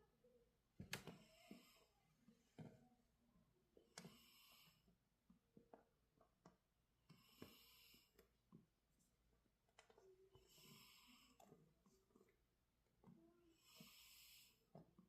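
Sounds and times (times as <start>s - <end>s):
cat snoring softly: 1.2s - 2.1s, 3.9s - 4.9s, 7.1s - 8.2s, 10.1s - 11.6s, 13.1s - 14.8s.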